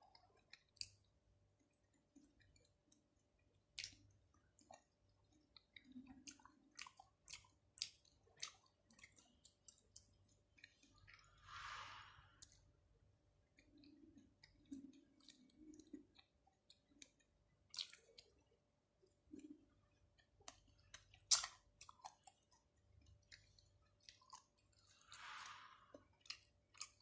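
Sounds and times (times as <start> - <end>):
soft chewing thuds: 0.1 - 12.7, 13.4 - 27.0
wet mouth chewing clicks: 3.8 - 11.4, 13.6 - 27.0.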